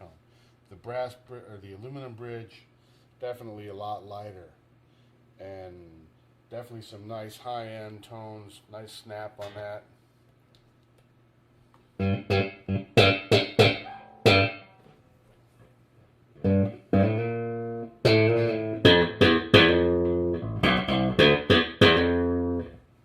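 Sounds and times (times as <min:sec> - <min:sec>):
electric bass guitar notes: 0:12.0 - 0:14.8, 0:16.4 - 0:22.9.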